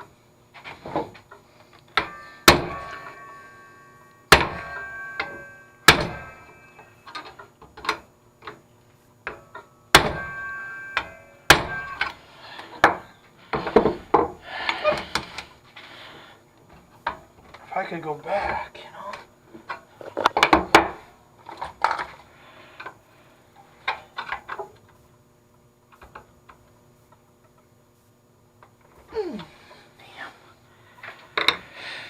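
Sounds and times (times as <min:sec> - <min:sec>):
hammer striking metal: 0:02.0 - 0:07.2, 0:09.3 - 0:13.1.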